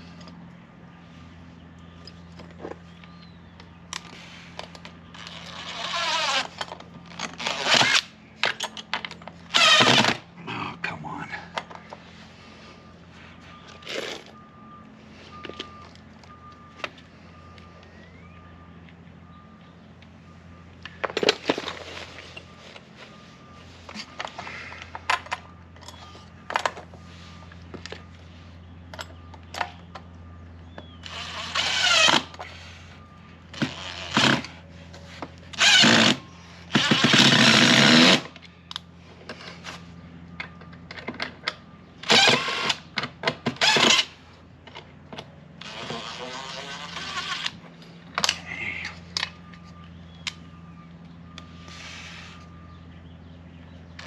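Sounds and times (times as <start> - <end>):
cordless drill driving screws: 5.2 - 6.6, 7.2 - 8.1, 9.5 - 10.2, 31.0 - 32.8, 33.6 - 34.6, 35.5 - 38.4, 42.0 - 42.8, 43.5 - 44.2, 45.6 - 47.6
clicks and knocks of handling hardware: 28.9 - 30.1, 38.4 - 41.7.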